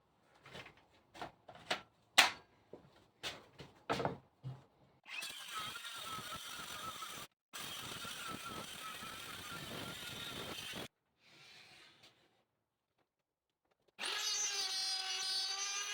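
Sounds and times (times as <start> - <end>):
power tool running: 5.1 - 10.9.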